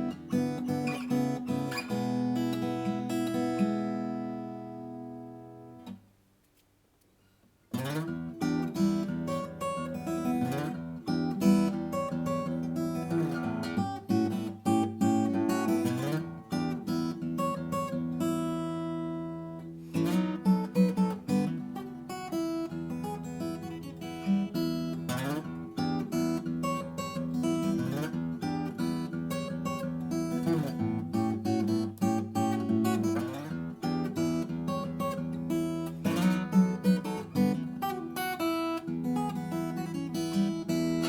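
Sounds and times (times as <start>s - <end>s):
acoustic guitar playing: 0.0s - 6.2s, 7.2s - 41.0s.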